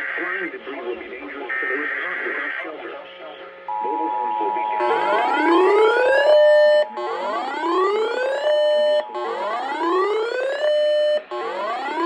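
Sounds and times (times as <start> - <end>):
faint steady tone: 3.6 - 12.0
rising weather-alert siren tone: 3.7 - 12.0.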